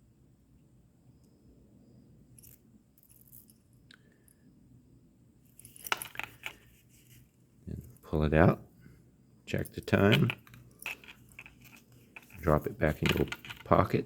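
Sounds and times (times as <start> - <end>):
rustling: 5.5 - 8.1, 9.8 - 13.9
watch chain clicks: 5.6 - 6.6, 9.7 - 13.9.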